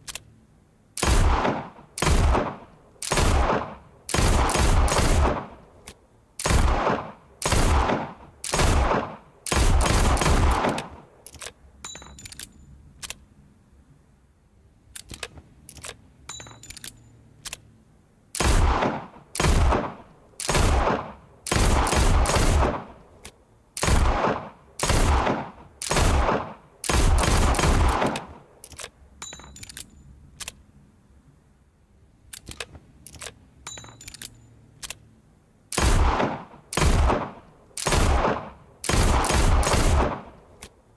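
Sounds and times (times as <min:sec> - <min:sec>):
faint mechanical clicks: 0:00.0 - 0:01.1, 0:05.7 - 0:06.6, 0:10.5 - 0:13.3, 0:14.8 - 0:18.5, 0:23.0 - 0:23.9, 0:27.9 - 0:30.8, 0:32.2 - 0:36.8, 0:37.4 - 0:40.9
revolver gunshots: 0:01.0 - 0:05.7, 0:06.4 - 0:11.1, 0:18.4 - 0:23.0, 0:23.8 - 0:28.5, 0:35.7 - 0:40.4.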